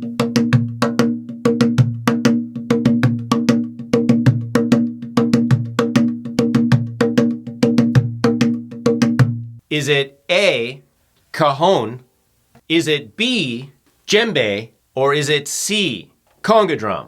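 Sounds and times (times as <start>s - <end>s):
cajon bass strokes: 0.0s - 9.6s.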